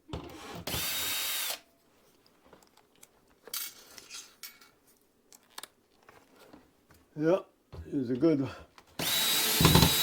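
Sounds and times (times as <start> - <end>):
power drill spinning: 0.4 - 1.6, 9.0 - 10.0.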